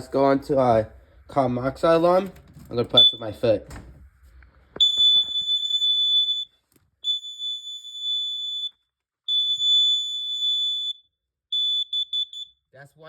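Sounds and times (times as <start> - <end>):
high-pitched alarm beeps: 3.0 - 3.4, 4.8 - 11.0, 11.6 - 12.6.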